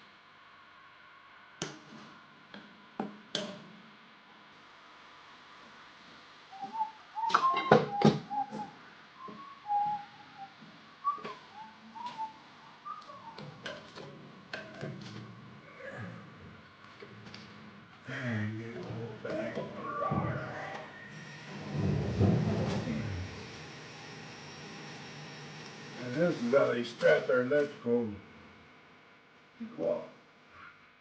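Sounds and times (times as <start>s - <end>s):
person whistling a tune: 6.6s - 13.4s.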